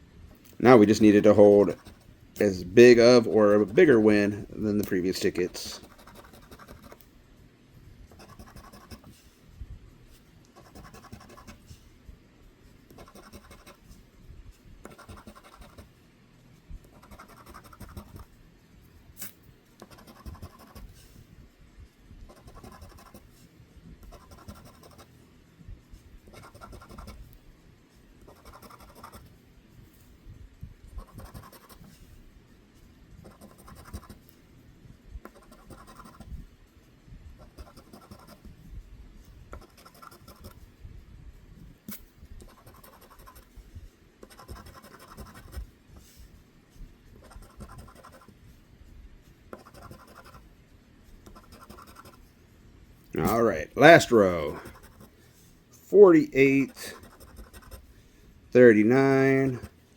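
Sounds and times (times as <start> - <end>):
scratch card scraping: 4.7 - 7.0, 8.2 - 9.2, 56.6 - 57.8.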